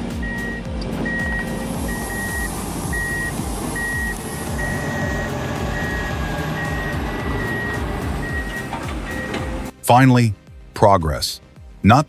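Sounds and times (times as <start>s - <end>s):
diesel engines rumbling: 0.0s - 9.8s
vehicle reversing alarm beeping: 0.2s - 9.7s.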